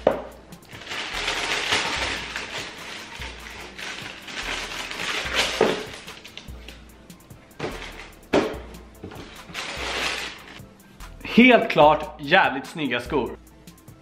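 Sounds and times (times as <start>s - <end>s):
rustling of packaging paper: 0.7s - 6.5s, 9.2s - 10.6s.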